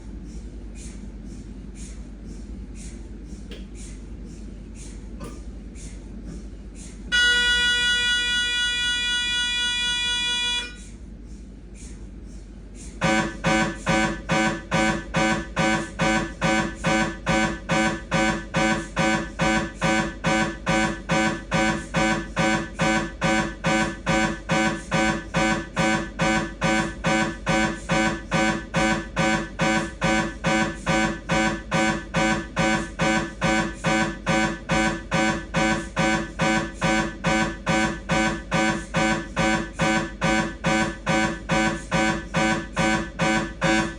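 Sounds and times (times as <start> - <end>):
mri scanner buzzing knocks: 13.0 - 43.9
steady tone: 13.0 - 43.9.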